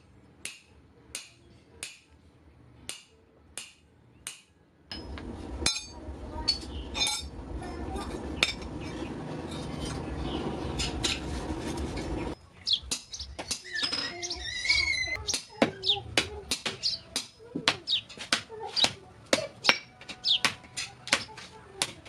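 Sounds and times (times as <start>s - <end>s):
steady noisy hum: 0.0s - 13.4s
small birds chirping: 6.3s - 21.6s.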